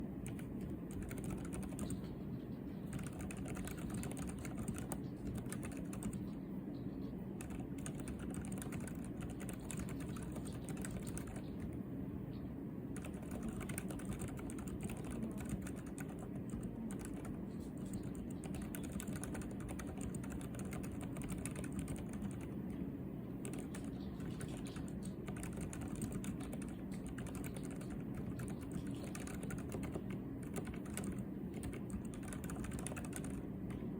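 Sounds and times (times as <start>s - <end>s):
fast mechanical keyboard typing: 0.2s - 2.2s, 2.8s - 6.4s, 7.4s - 11.8s, 12.9s - 22.8s, 23.4s - 33.9s.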